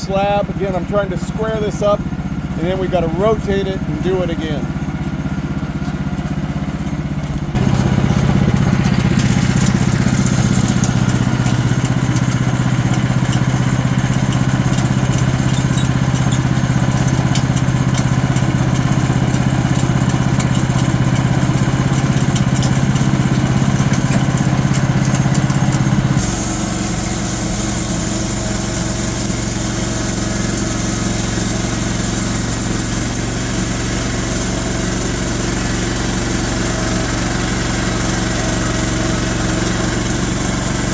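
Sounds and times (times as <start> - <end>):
sawmill engine running: 0.0 - 40.9
saw cutting log: 7.5 - 20.3, 21.6 - 40.9.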